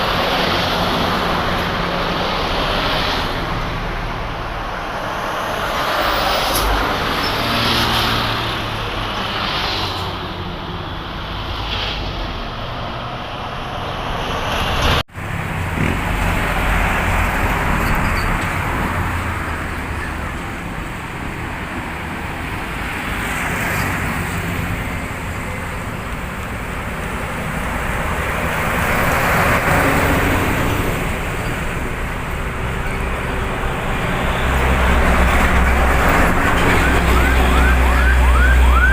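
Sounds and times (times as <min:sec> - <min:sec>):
motorcycles and cars passing: 0:05.5 - 0:38.9.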